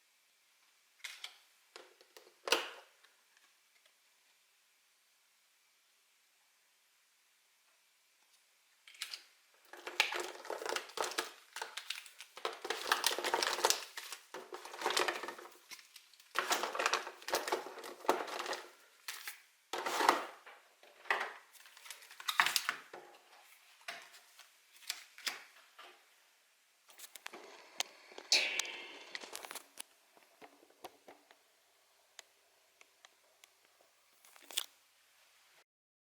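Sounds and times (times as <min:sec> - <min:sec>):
packaging crinkling and tearing: 0:08.9 - 0:20.1, 0:21.5 - 0:25.5, 0:34.2 - 0:34.8.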